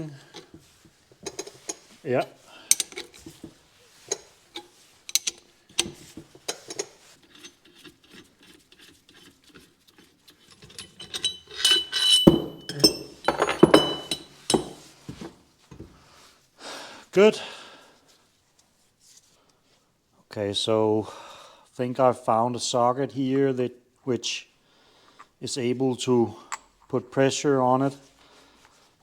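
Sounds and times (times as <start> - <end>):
ringing metallic clanks: 10.7 - 14.9.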